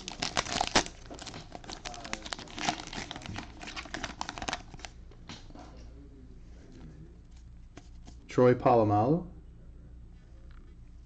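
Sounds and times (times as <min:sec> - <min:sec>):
plastic wrapper crinkling: 0:00.0 - 0:05.0.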